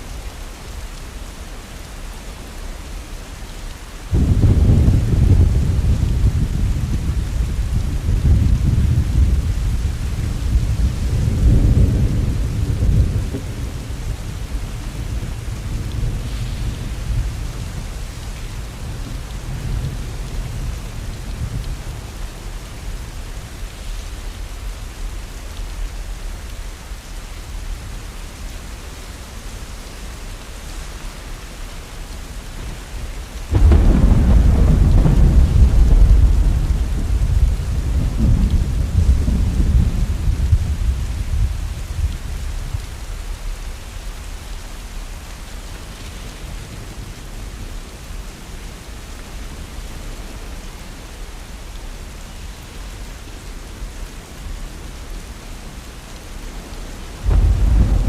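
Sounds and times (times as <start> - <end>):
steady rain: 0.0 - 58.0
loud thunderclap: 4.1 - 14.1, 33.5 - 42.1, 57.2 - 58.0
low thunder rumble: 4.1 - 23.9, 32.6 - 43.6, 56.7 - 58.0.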